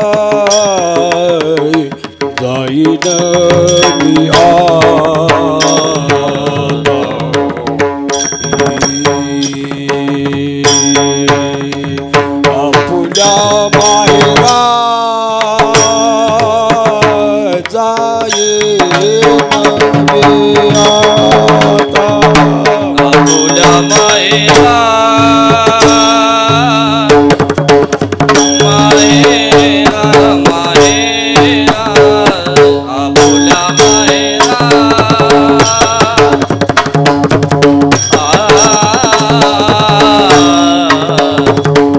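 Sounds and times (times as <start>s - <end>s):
person singing melodic runs: 0.0s - 7.7s, 28.4s - 36.6s, 38.0s - 41.9s
hand drum strokes: 0.0s - 41.9s.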